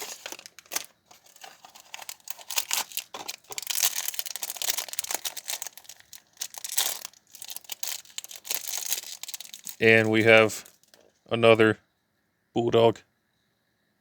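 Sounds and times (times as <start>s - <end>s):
candy wrapper crinkling and tearing: 0.0s - 11.0s.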